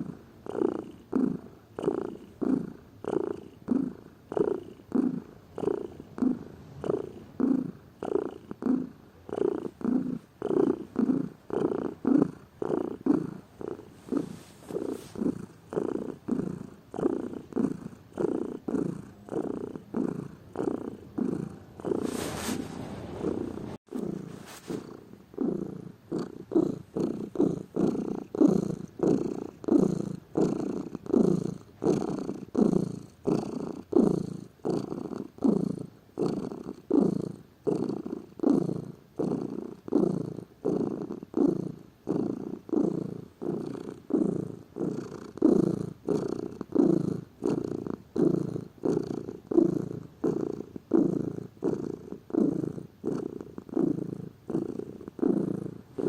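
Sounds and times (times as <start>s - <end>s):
cat purring: 0.0s - 56.0s
brief rush of noise: 22.0s - 23.8s.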